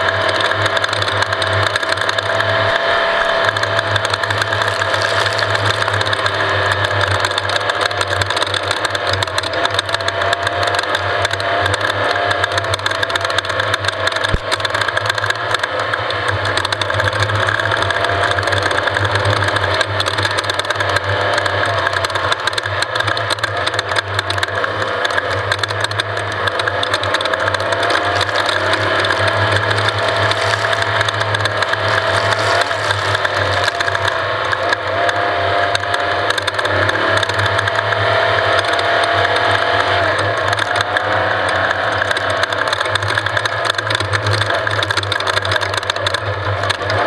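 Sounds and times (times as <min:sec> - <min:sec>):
rattle and clatter: 0:00.0 - 0:39.2, 0:42.0 - 0:47.0
off-road vehicle engine running: 0:00.0 - 0:47.0.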